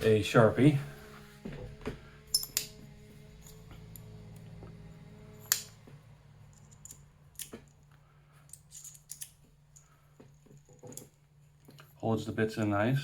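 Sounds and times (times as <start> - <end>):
small metal clicks: 2.3 - 2.8, 6.5 - 11.9.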